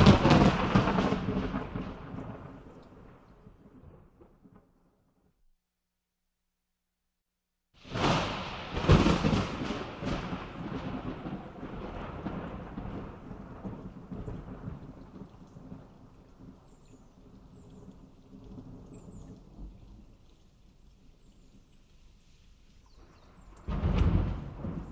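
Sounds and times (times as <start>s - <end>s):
thunderclap rumbling: 0.0s - 4.6s, 7.8s - 16.7s, 23.0s - 24.9s.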